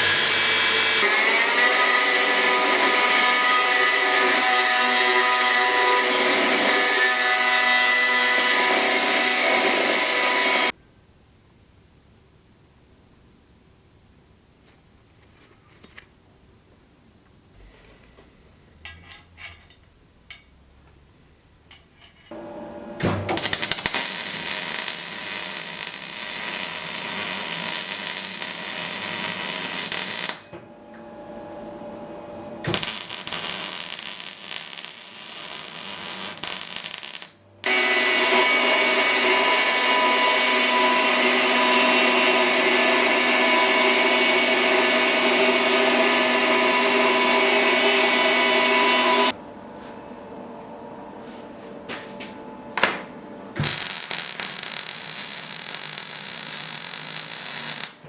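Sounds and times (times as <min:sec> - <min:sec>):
electric power tool whining: 0:53.6 - 0:58.0.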